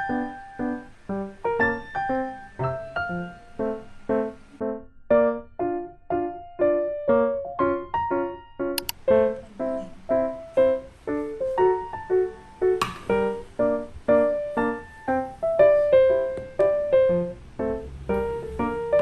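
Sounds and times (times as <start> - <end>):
gentle piano music: 0.0 - 19.0
brief click: 8.8 - 9.0.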